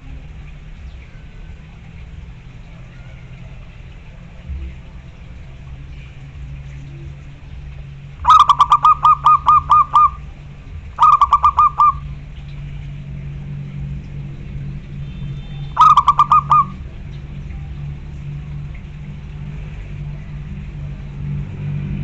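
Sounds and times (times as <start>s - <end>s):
steady low hum: 0.0s - 22.0s
dove cooing: 8.2s - 12.2s, 15.8s - 16.9s.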